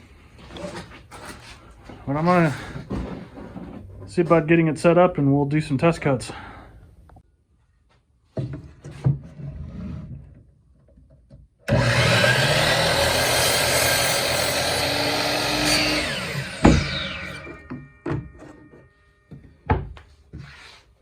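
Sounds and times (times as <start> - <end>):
miter saw cutting wood: 11.7 - 17.8
saw motor winding down whine: 11.7 - 17.8.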